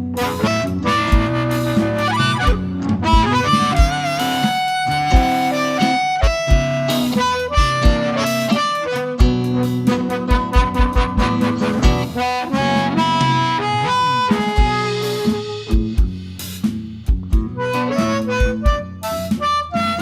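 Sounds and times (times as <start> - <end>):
guitar: 0.0 - 20.0
harmonica bending notes: 0.0 - 20.0
kick drum beat: 0.4 - 8.2, 10.2 - 12.3, 15.7 - 16.2, 17.1 - 17.7, 18.4 - 19.2.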